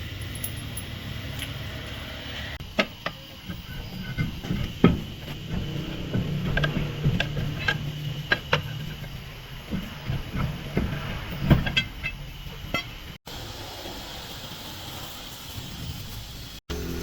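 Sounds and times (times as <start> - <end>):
tools clanking on metal: 2.6 - 13.2.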